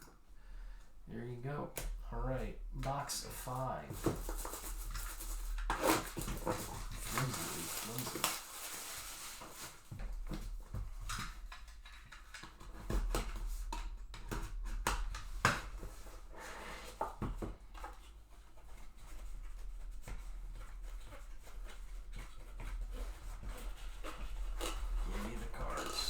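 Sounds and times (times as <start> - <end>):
cardboard box being opened by hand: 3.4 - 10.4
low steady hum: 24.6 - 26.0.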